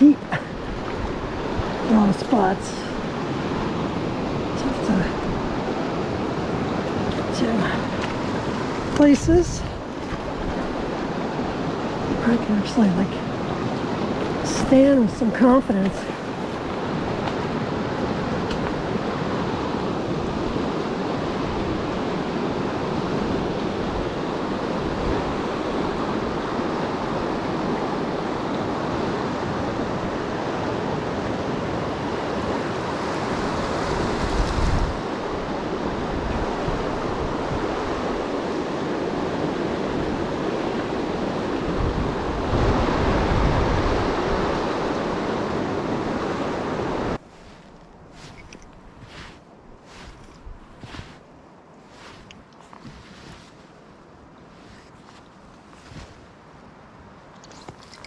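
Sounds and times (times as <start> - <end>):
wind buffeting microphone: 0.0 - 26.6, 33.4 - 38.5, 39.3 - 51.2
creek water rushing: 0.0 - 57.3.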